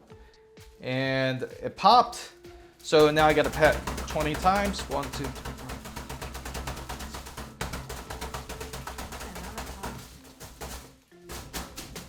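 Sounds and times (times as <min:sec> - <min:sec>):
music with fast percussive beat: 0:02.8 - 0:12.0.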